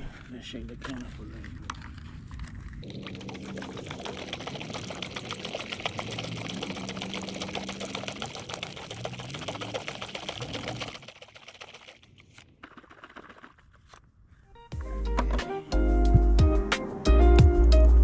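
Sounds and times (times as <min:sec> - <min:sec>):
paint can rattling: 0:02.8 - 0:14.1.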